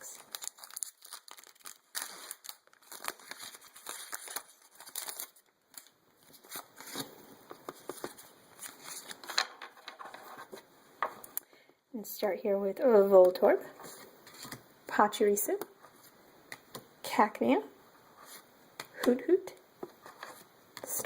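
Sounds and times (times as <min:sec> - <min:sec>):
foil wrapper crinkling and tearing: 0:00.0 - 0:07.2.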